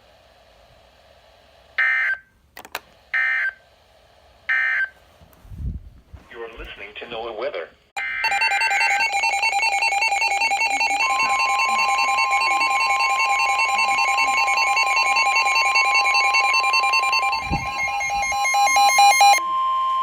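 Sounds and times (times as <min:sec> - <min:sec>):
steady alarm tone: 0:08.0 - 0:20.0
pulsing electronic beep: 0:08.2 - 0:20.0.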